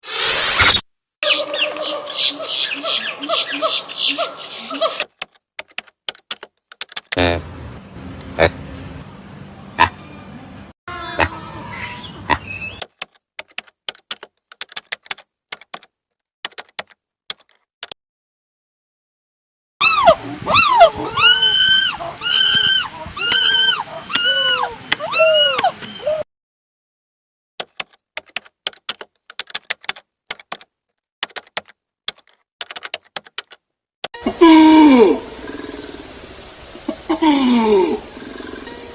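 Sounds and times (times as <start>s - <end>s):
loud pitched animal call: 19.8s - 26.2s.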